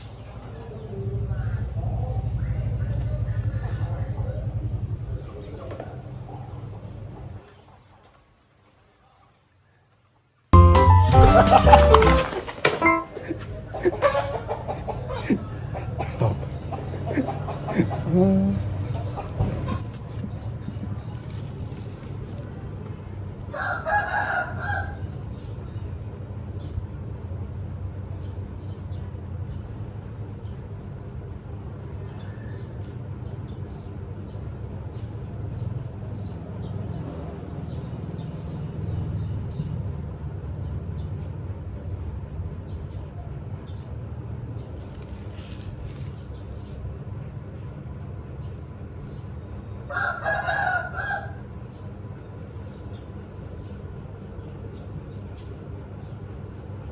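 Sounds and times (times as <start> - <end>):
rooster crowing: 23.5 - 25.2, 49.9 - 51.5.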